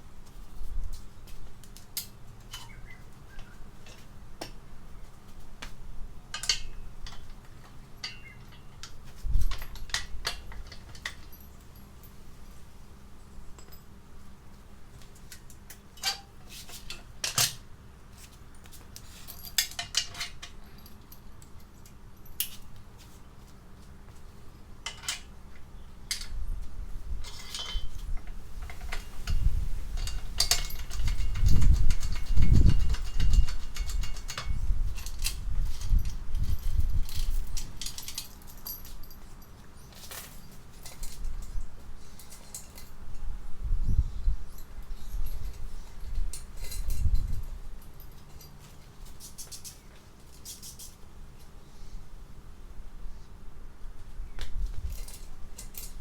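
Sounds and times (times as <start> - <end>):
metallic clinks of tools and parts: 6.3 - 12.2, 13.5 - 14.0, 15.0 - 17.6, 18.9 - 23.2, 23.8 - 26.5, 27.1 - 43.3, 44.2 - 51.6, 54.6 - 56.0.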